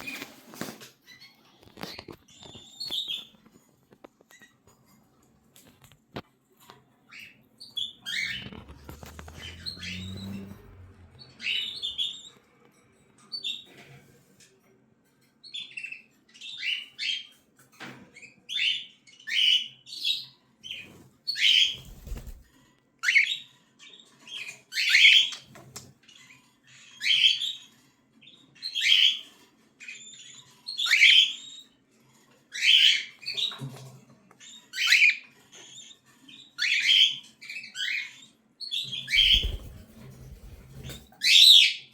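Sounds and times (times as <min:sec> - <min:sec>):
cockatiel chicks calling: 0:07.1 - 0:10.6, 0:39.1 - 0:41.8
low rustling: 0:39.1 - 0:41.1.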